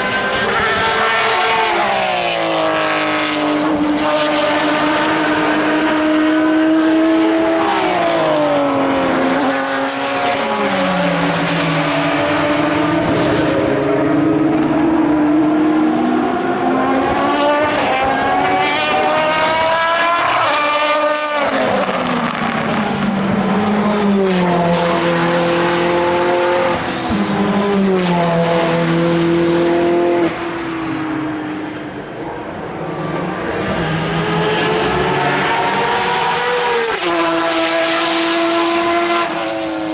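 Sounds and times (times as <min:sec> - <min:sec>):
racing car engines downshifting: 0:00.0 - 0:39.9.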